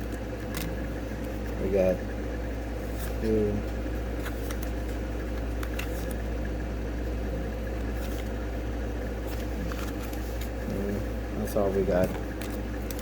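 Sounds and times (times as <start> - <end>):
cards being handled: 0.0 - 1.8, 2.6 - 6.4, 7.7 - 8.5, 9.1 - 13.0
low background hum: 0.0 - 13.0.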